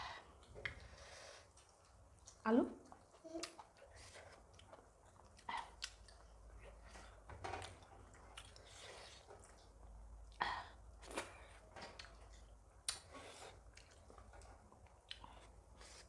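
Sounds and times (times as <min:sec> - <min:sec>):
person chewing food: 0:00.2 - 0:16.0.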